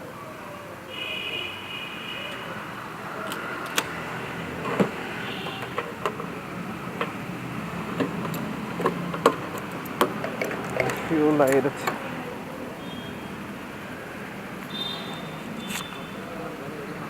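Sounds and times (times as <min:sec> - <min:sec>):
fuel pump humming: 0:03.6 - 0:17.0.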